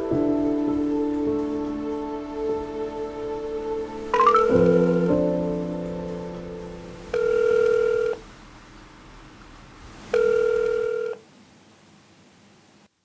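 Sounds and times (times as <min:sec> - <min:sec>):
held music chord: 0:00.0 - 0:08.0
telephone ringback tone beeps: 0:04.2 - 0:05.1, 0:07.1 - 0:08.2, 0:10.2 - 0:11.2.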